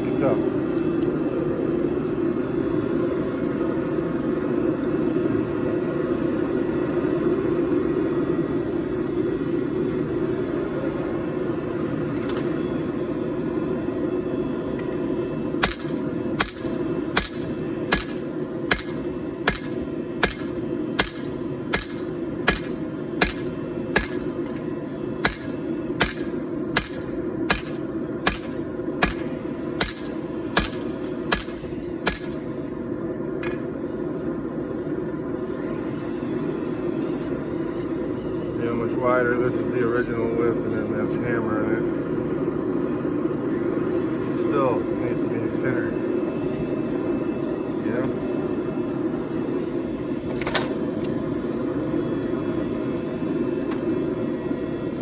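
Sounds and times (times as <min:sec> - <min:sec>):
hammer striking steel on anvil: 0:15.6 - 0:32.5.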